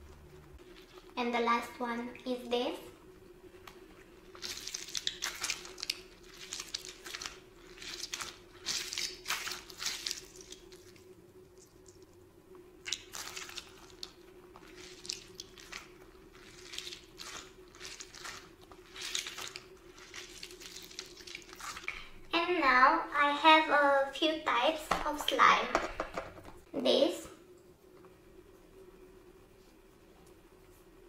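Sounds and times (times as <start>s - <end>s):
faint steady hum: 0.0s - 31.0s
squishy toy squishing: 4.4s - 10.9s.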